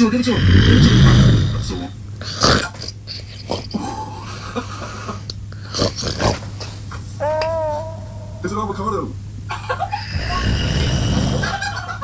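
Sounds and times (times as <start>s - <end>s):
dog snorting: 0.0s - 4.5s, 5.6s - 6.8s, 10.1s - 11.9s.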